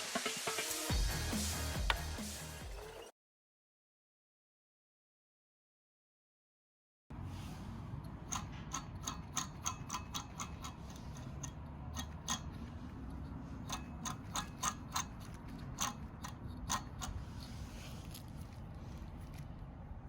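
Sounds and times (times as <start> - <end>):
low steady rumble: 10.6 - 20.0.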